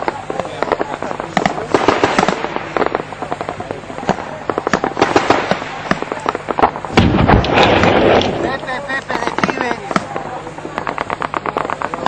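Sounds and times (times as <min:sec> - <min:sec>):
small-arms gunfire: 0:00.0 - 0:08.5
loud blast: 0:00.0 - 0:12.0.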